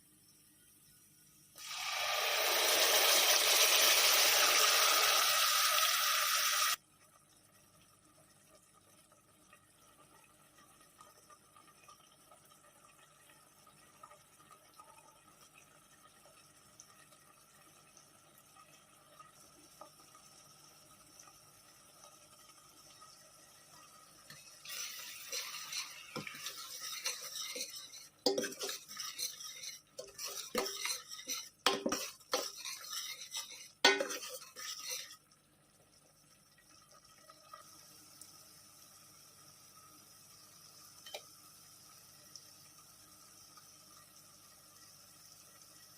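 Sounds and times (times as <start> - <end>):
spoon stirring in pot: 24.3 - 35.3
spoon knocking against pot: 31.6 - 32.6, 33.8 - 34.3.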